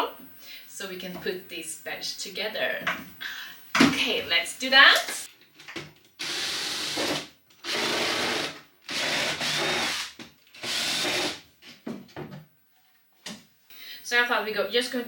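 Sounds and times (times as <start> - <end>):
power drill bursts: 6.2 - 11.4.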